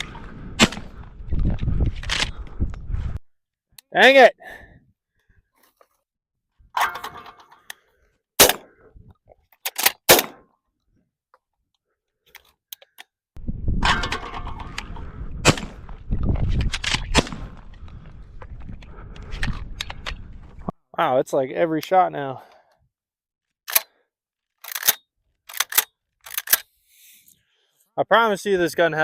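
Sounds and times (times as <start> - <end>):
shotgun firing: 0.6 - 1.0, 8.4 - 8.7, 10.1 - 10.4, 15.4 - 15.8, 17.0 - 17.5.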